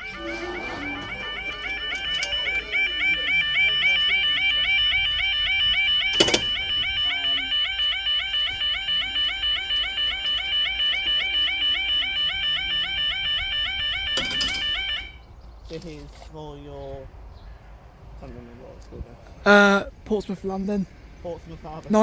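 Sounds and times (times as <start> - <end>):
warbling level crossing alarm: 0.0 - 15.2.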